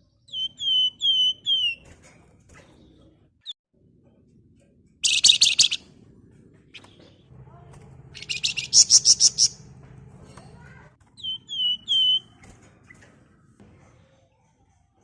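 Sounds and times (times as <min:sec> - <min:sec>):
bird chirps: 0:00.0 - 0:03.6, 0:05.0 - 0:05.8, 0:08.1 - 0:09.7, 0:11.2 - 0:13.1
bird whistles: 0:11.2 - 0:12.3.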